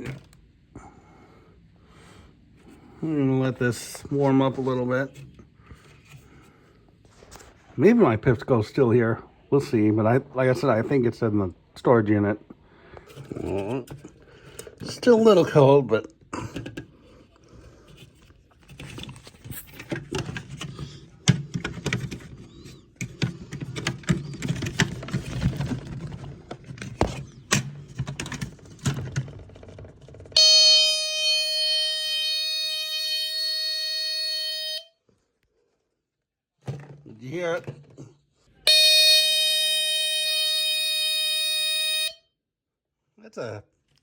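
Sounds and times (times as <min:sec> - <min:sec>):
smoke alarm handling clicks and knocks: 0:19.8 - 0:22.4
smoke alarm buzzy tone: 0:30.4 - 0:35.0, 0:38.7 - 0:42.2.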